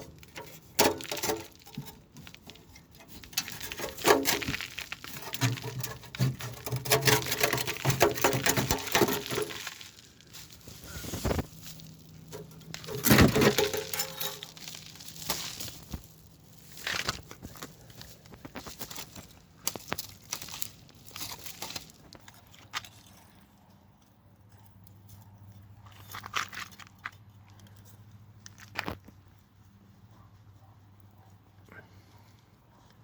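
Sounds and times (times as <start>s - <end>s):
rustling and clicks of tool work: 0.0s - 23.5s.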